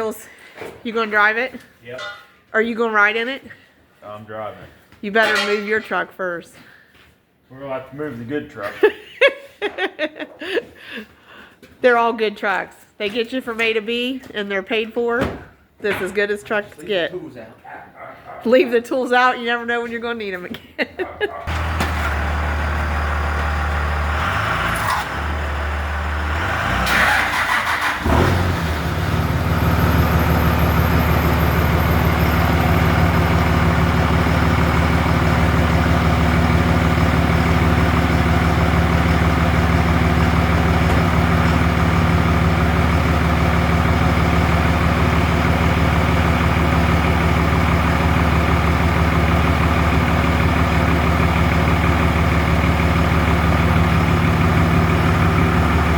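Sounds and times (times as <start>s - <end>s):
truck engine starting and idling: 21.4s - 55.9s
low engine hum: 21.5s - 55.9s.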